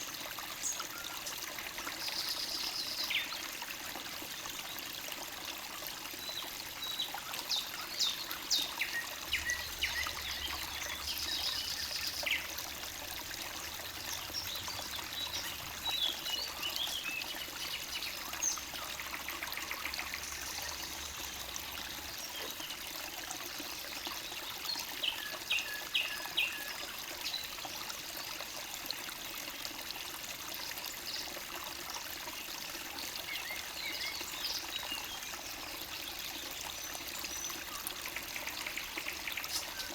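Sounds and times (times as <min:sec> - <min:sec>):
stream babbling: 0:00.0 - 0:39.9
songbirds singing: 0:06.1 - 0:22.8, 0:32.9 - 0:39.9.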